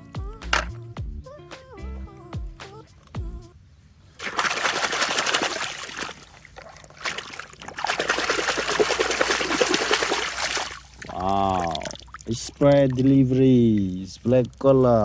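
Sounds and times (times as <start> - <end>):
water splashing over toys: 4.2 - 15.0.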